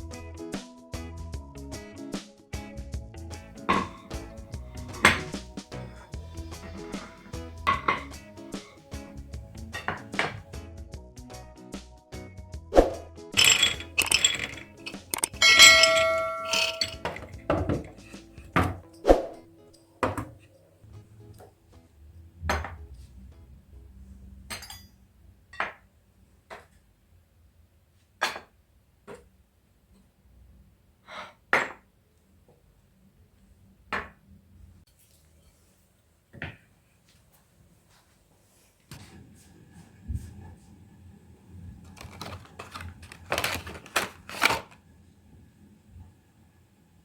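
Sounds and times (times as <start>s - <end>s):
soft background music: 0.0s - 24.6s
dishes clinking and knocking: 3.7s - 4.1s, 4.8s - 5.4s, 7.7s - 8.2s, 9.7s - 10.5s, 13.4s - 18.9s, 42.0s - 44.6s.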